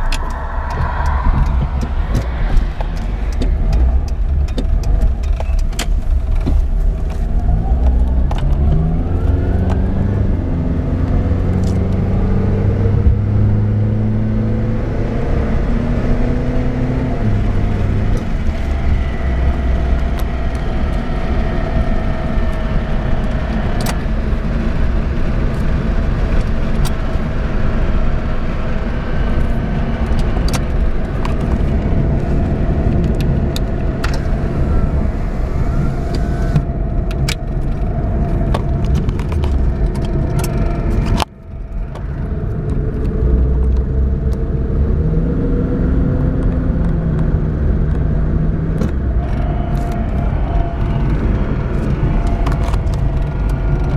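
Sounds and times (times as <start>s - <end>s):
slowly rising tone: 0.0s - 4.8s, 28.8s - 53.9s
car engine and road rumble: 0.0s - 53.9s
constant whining tone: 0.0s - 53.9s.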